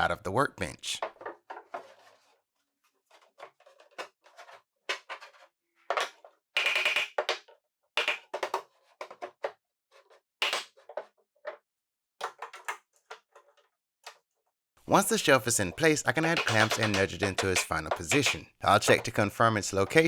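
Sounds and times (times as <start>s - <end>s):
wood scraping on wood: 1.0s - 2.4s
wooden shelf knocking: 16.2s - 19.1s.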